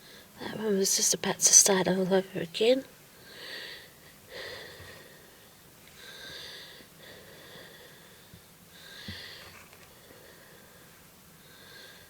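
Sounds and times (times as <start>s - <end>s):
person breathing: 3.2s - 12.0s.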